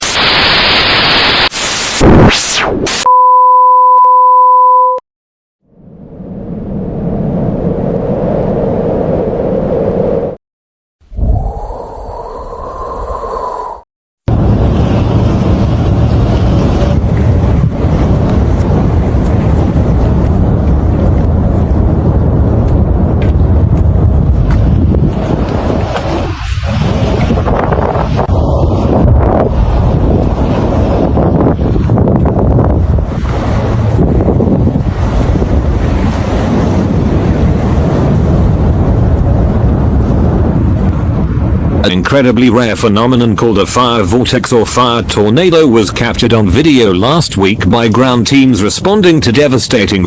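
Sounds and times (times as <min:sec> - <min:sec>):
loud static hiss: 0:00.0 - 0:03.1
two-tone beep: 0:03.0 - 0:05.0
low rumble: 0:05.6 - 0:10.4, 0:11.1 - 0:41.9
wind buffeting microphone: 0:11.1 - 0:50.0.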